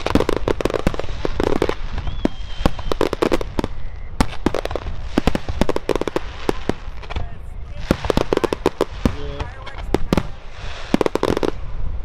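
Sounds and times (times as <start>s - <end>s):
fireworks bursts banging: 0.0s - 11.9s
fireworks crackling: 0.0s - 12.0s
faint high whistle: 1.9s - 4.4s.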